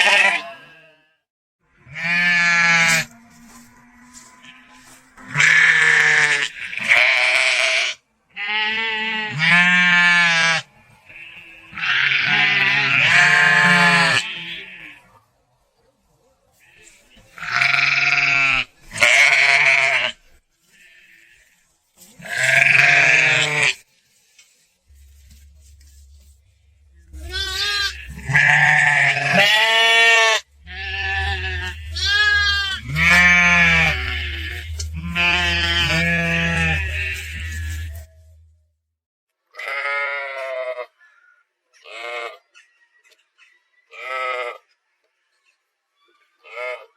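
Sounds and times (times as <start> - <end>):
sheep bleating: 0.0 - 1.2, 1.8 - 15.1, 16.6 - 20.2, 22.2 - 23.8, 26.9 - 38.3, 39.6 - 41.0
steady low hum: 24.8 - 38.8.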